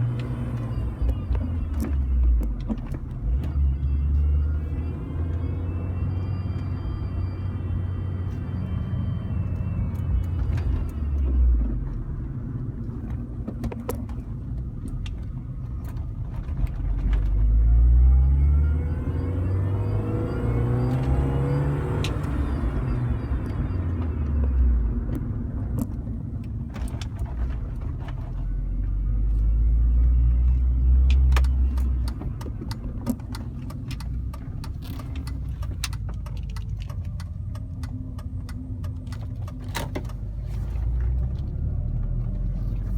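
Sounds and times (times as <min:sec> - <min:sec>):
car engine accelerating: 0:00.0 - 0:42.9
whine rising in pitch: 0:03.3 - 0:12.5, 0:17.3 - 0:25.6.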